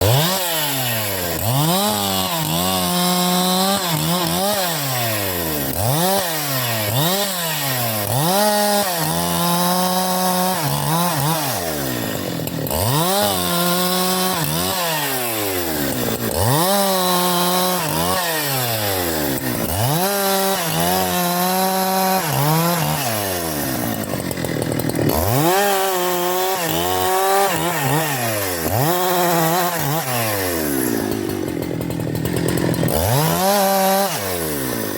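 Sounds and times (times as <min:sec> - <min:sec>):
chainsaw engine revving: 0:00.0 - 0:34.9.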